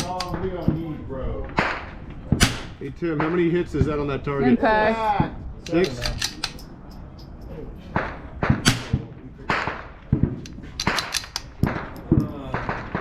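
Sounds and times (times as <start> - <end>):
rifle action clicking: 5.6 - 7.3, 10.4 - 12.1
rifle shots cracking: 7.9 - 13.0.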